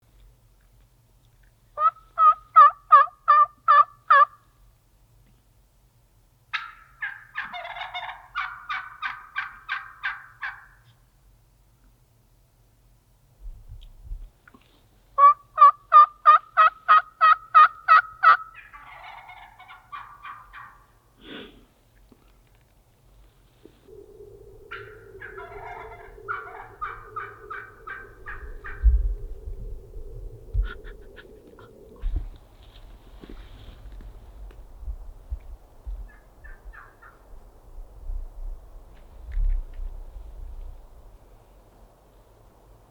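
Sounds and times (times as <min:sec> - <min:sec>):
turkey gobbling: 0:01.8 - 0:04.4, 0:06.5 - 0:10.9, 0:15.2 - 0:21.0, 0:23.8 - 0:32.2, 0:36.1 - 0:37.2
steady low hum: 0:23.5 - 0:35.8.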